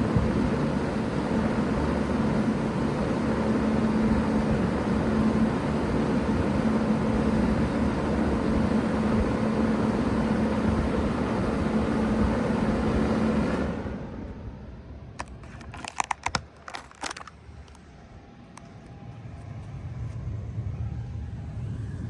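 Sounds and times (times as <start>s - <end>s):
compressor hum: 0.0s - 22.0s
fans running: 0.0s - 22.0s.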